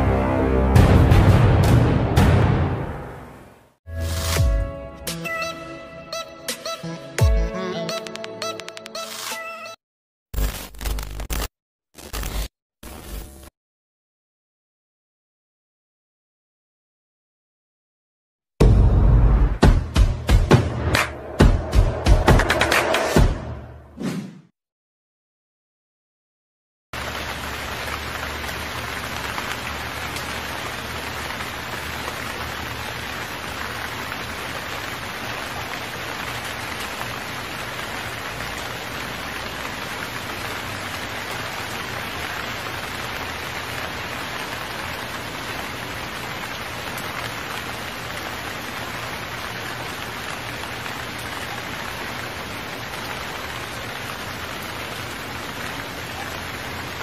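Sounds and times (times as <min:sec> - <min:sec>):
heavy rain hissing: 0:27.0 - 0:57.0.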